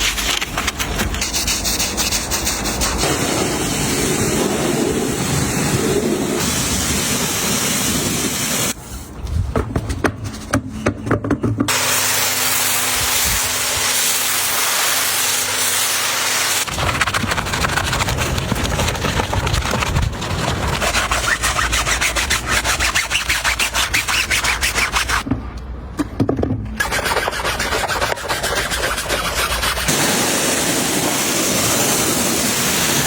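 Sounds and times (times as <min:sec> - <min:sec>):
spraying hiss: 0:01.2 - 0:08.8, 0:11.7 - 0:16.7, 0:29.9 - 0:33.0.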